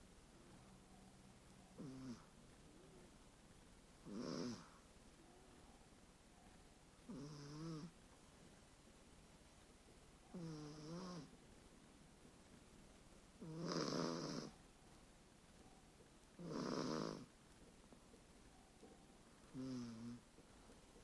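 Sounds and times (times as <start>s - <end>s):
boy snoring: 1.8s - 2.2s, 4.1s - 4.8s, 13.4s - 14.6s, 16.4s - 17.3s, 19.5s - 20.2s.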